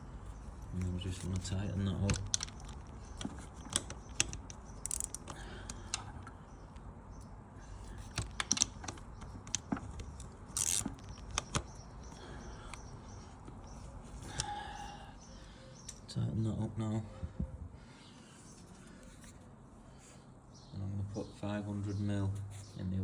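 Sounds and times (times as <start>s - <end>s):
wrench clicking: 2.2s - 6.1s.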